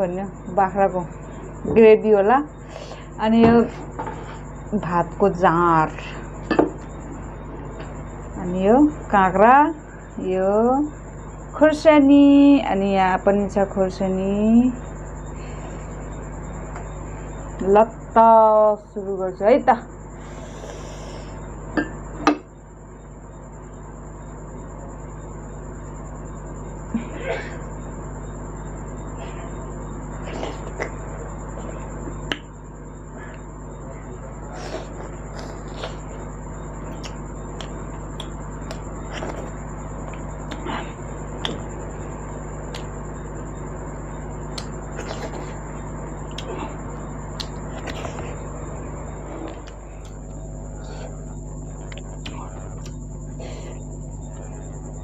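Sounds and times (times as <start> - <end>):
faint high whine: 0.0 - 55.0
low hum: 0.0 - 55.0
wet chewing and smacking: 34.5 - 42.0, 42.7 - 43.0, 44.5 - 53.1.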